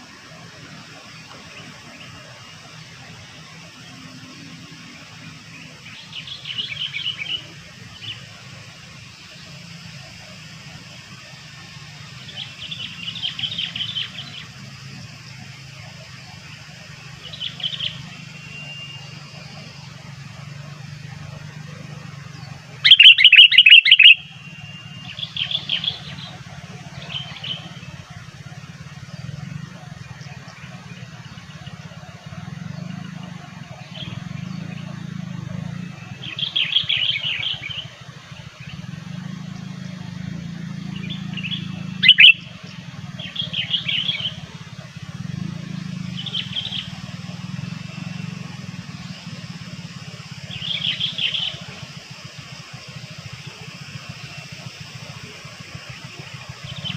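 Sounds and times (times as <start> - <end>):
bird calling in bubbly chirps: 10.0 - 15.0, 15.8 - 20.0, 20.8 - 56.9.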